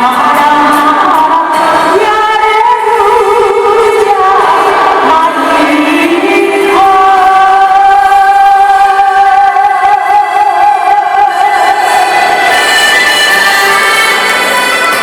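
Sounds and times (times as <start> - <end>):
women singing: 0.0 - 12.5
instrumental accompaniment: 11.4 - 15.0.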